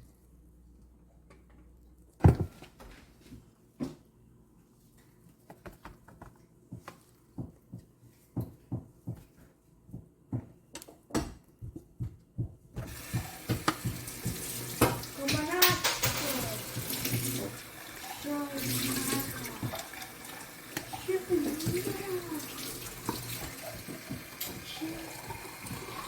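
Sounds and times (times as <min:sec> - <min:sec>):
tap running: 0:12.8 - 0:26.0.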